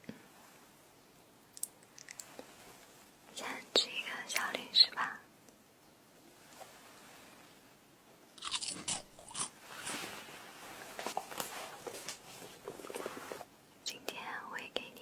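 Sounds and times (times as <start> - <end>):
close-up crunching and crackling: 8.4 - 10.0.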